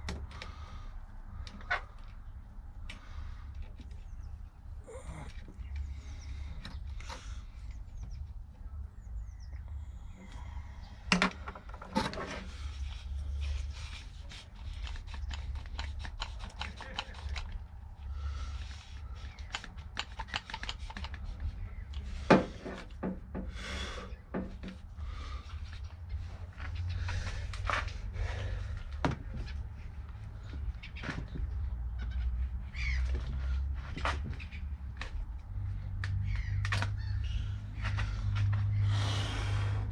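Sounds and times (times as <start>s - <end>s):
scraping and rubbing: 11.6s - 23.0s.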